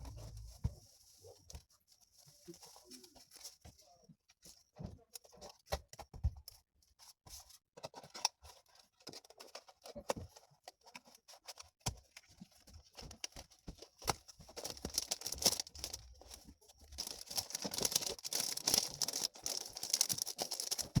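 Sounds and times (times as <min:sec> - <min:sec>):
paper rustling and crinkling: 0:07.3 - 0:21.0.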